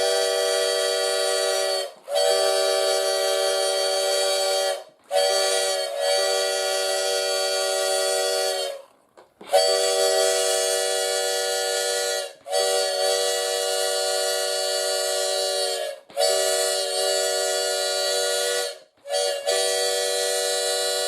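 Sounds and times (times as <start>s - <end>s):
steam whistle chord blasts: 0.0s - 21.0s.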